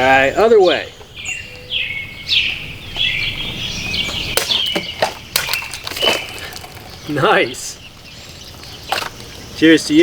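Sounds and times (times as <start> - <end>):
birds chirping: 0.0 - 10.0
knife slashing plastic bottles: 4.4 - 6.9.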